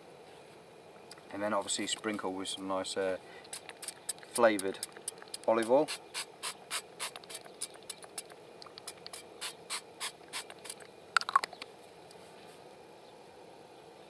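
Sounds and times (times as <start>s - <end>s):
faint hiss: 0.0s - 14.0s
butter and oil crackling in pan: 3.5s - 6.4s.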